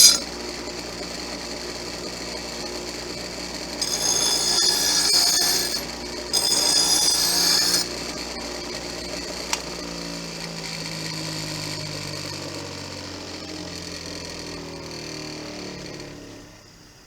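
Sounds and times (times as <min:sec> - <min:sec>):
motor running: 0:00.0 - 0:00.3, 0:03.7 - 0:09.4.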